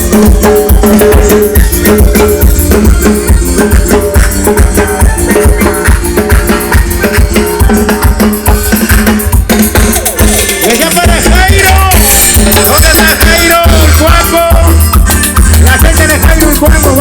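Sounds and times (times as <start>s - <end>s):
live latin dance band: 0.0s - 17.0s.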